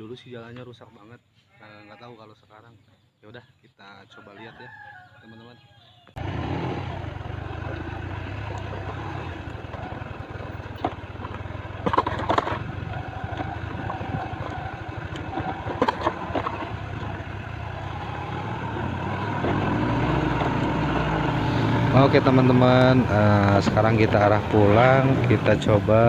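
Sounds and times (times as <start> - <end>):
motorcycle engine running: 6.2 - 26.0
road and wind noise: 6.2 - 26.0.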